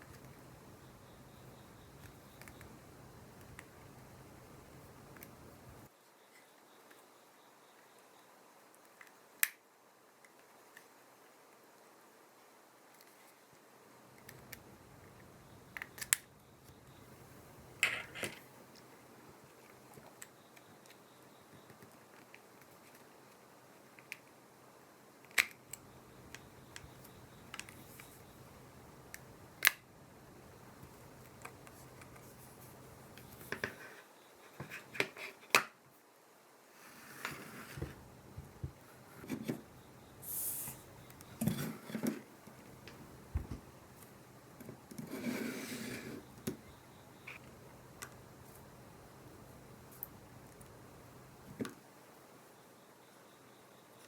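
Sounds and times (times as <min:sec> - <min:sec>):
small tools clicking on phone: 0:01.3 - 0:02.8
scraping and rubbing noises: 0:36.8 - 0:38.0, 0:45.0 - 0:46.3.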